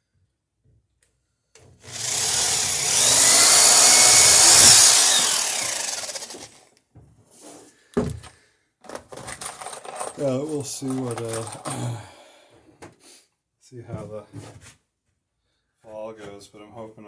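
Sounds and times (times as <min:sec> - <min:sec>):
power drill boring through wood: 0:01.8 - 0:06.6.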